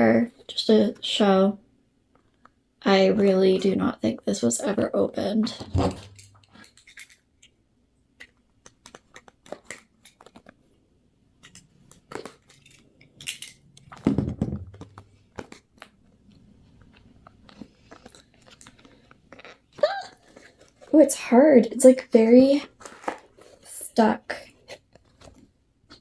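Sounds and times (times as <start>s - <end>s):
rubbing thump: 5.5s - 6.6s, 14.0s - 15.1s
packaging clicks and crinkles: 8.2s - 10.8s, 11.4s - 14.0s, 14.8s - 20.9s, 22.6s - 23.7s, 24.4s - 26.0s.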